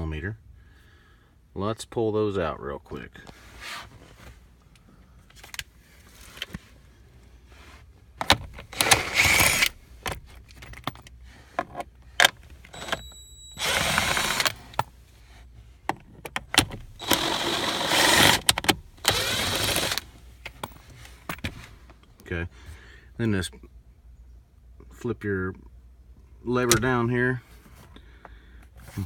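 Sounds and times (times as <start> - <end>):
power tool backing out screws: 8.2 - 10.2, 12.7 - 14.8, 16.5 - 20.0.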